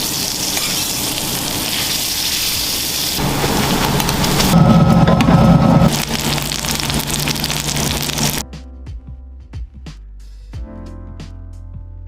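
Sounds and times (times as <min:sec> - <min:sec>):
food frying with hissing sizzle: 0:00.0 - 0:04.6, 0:05.9 - 0:08.4
deeper steady tone: 0:04.5 - 0:08.4.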